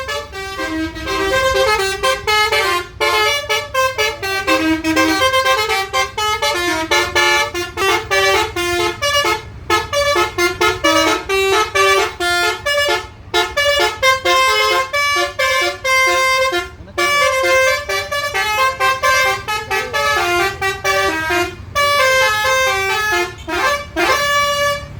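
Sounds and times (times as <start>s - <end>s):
bus horn playing melody: 0.0s - 24.9s.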